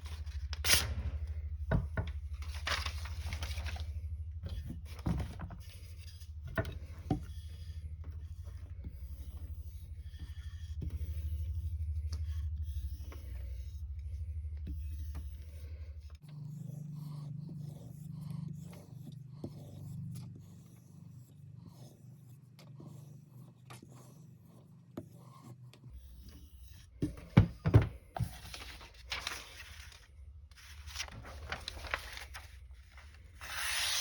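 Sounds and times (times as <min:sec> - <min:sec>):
faint handling sounds: 0:01.9 - 0:13.6, 0:25.1 - 0:34.0
scraping and rubbing: 0:28.1 - 0:34.0.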